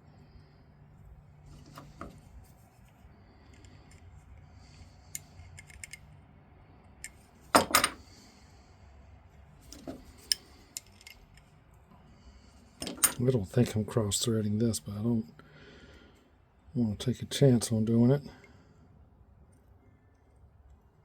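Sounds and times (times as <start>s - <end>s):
small metal clicks and clinks: 5.1s - 6.1s.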